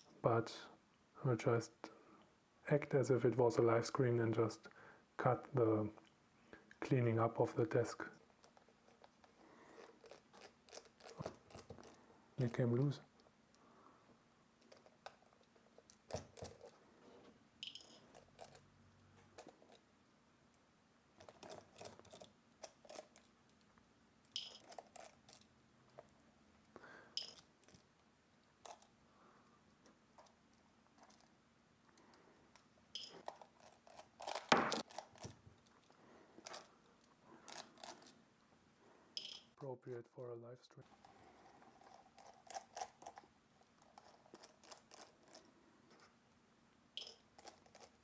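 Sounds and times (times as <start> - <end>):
small metal parts clinking on desk: 17.6 - 18.6, 24.3 - 25.5, 27.2 - 27.5, 39.2 - 39.5, 47.0 - 47.9
knock on desk: 34.5 - 34.8.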